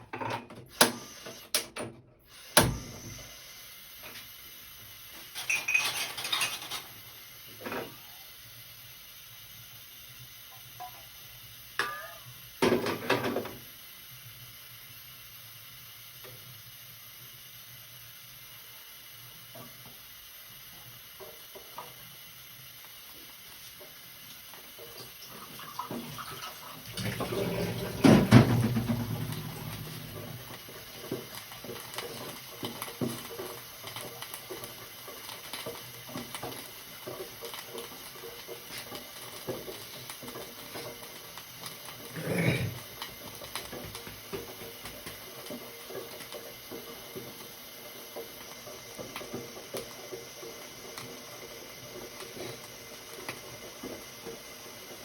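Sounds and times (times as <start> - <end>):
water running from a tap: 4.7 - 55.0
dishes clinking: 5.4 - 6.9, 11.8 - 13.3.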